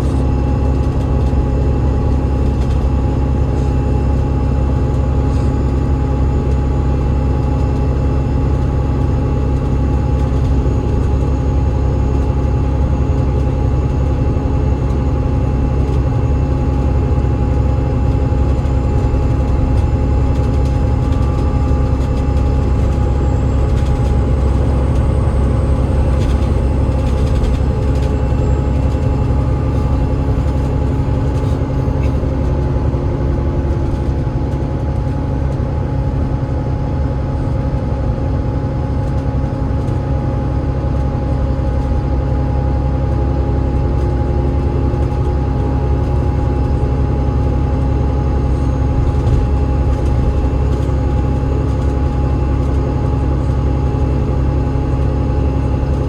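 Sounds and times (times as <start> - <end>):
bus diesel engine drone: 0.0 - 56.0
gearbox whining tones: 17.0 - 32.9.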